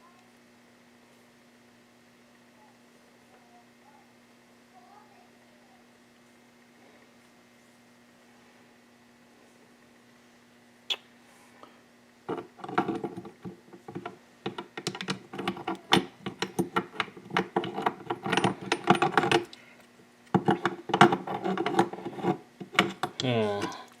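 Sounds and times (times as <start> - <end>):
metal engine parts clinking: 14.0 - 19.5.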